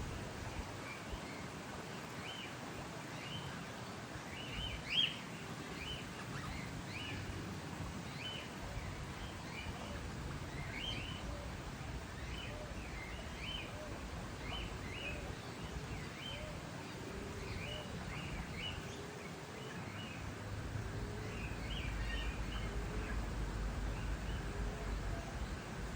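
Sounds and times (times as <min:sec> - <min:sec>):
steady background hiss: 0:00.0 - 0:25.9
fainter low bird calls: 0:08.1 - 0:25.9.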